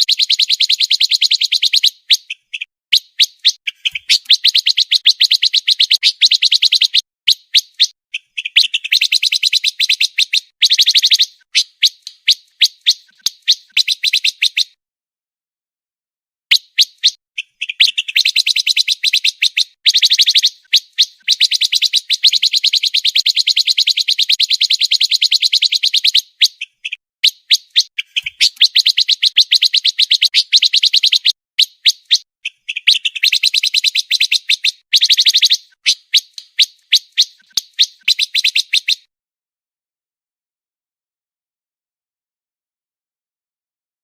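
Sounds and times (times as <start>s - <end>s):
songbird singing high chirps: 0.0s - 14.8s, 16.5s - 39.1s.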